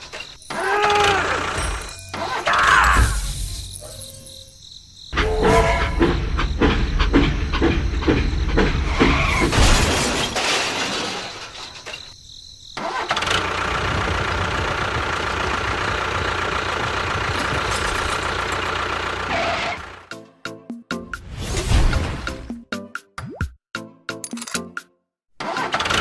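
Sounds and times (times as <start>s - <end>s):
engine running: 12.8s - 20.1s.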